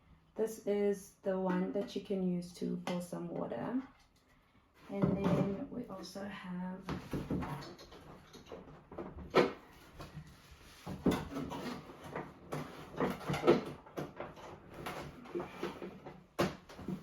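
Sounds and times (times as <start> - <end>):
plastic and cardboard rustling: 7.0 - 17.0.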